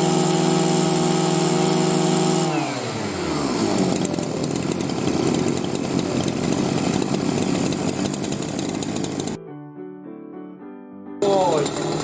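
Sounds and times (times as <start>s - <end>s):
impact wrench rattling: 3.9s - 9.4s, 11.5s - 12.0s.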